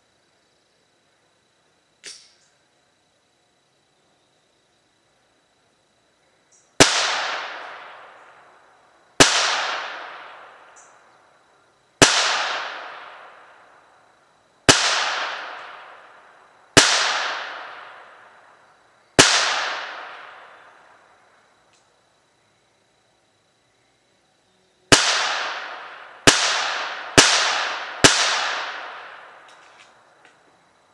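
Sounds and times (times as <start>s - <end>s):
pistol shots: 6.8s - 8.2s, 9.2s - 10.6s, 12.0s - 13.4s, 14.7s - 16.0s, 16.8s - 18.2s, 19.2s - 20.6s, 24.9s - 29.5s.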